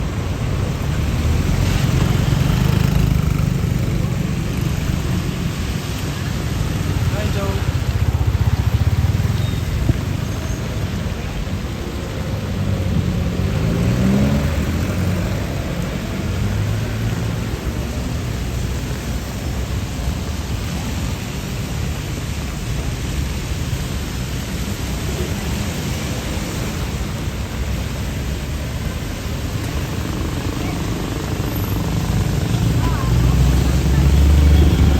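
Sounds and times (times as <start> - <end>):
steady rain hiss: 0.0 - 34.9.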